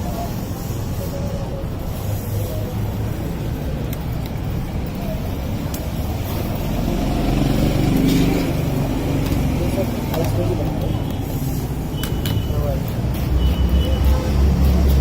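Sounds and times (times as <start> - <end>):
road traffic rumble: 0.0 - 15.0
vehicle engine approaching: 6.0 - 10.6.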